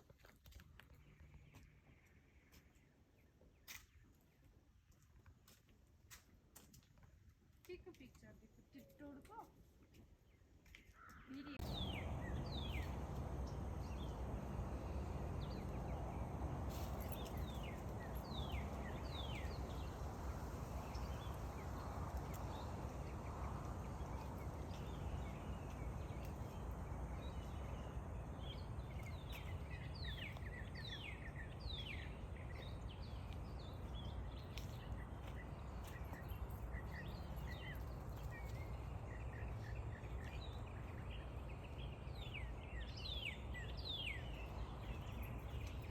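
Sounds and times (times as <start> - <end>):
low outdoor rumble: 11.3 - 45.9.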